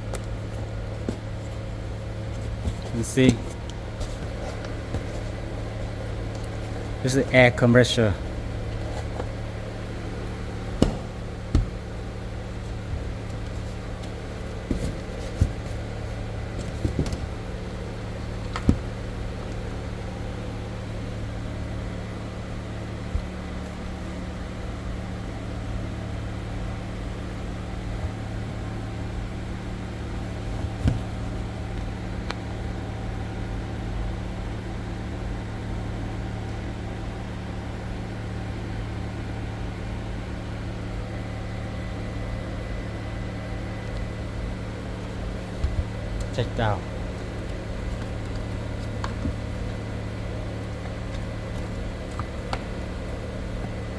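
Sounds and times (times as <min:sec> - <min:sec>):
low mechanical hum: 0:00.0 - 0:53.9
compressor kit clicks and knocks: 0:10.7 - 0:12.0, 0:16.5 - 0:17.5, 0:47.1 - 0:52.8.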